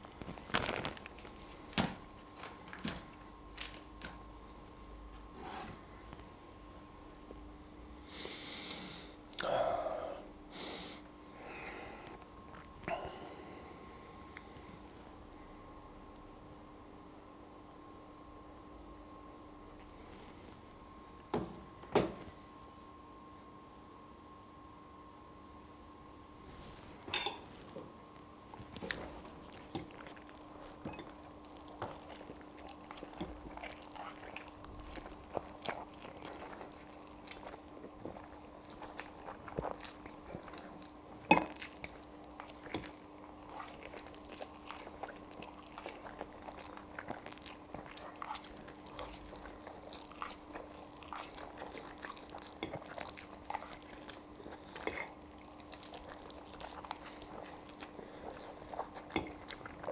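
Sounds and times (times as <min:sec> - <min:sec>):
person chewing food: 0:00.0 - 0:02.9, 0:26.4 - 0:59.9
faint steady hum: 0:00.0 - 0:59.9.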